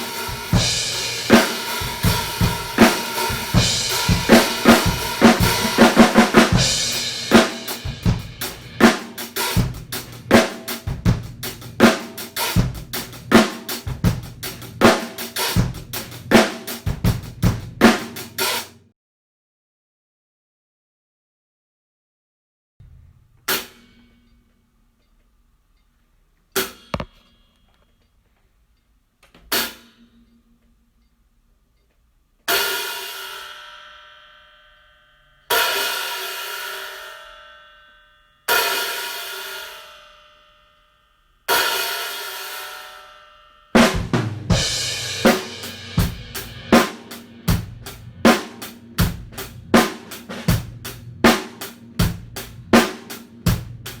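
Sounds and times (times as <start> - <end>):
drum kit groove: 0.0 - 18.8, 43.8 - 54.0
hi-hat cymbal strikes: 0.0 - 18.8, 32.5 - 34.0, 43.8 - 54.0.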